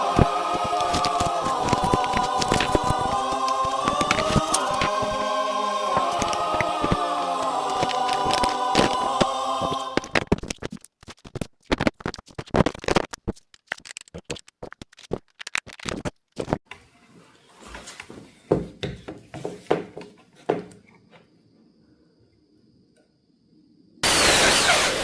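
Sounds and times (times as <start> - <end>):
choral music: 0.0 - 10.3.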